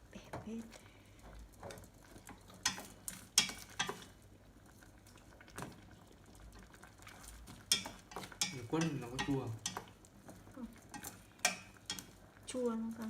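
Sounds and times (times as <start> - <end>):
utensil clinking against cooking pot: 2.3 - 4.1, 7.6 - 10.0, 10.8 - 12.2.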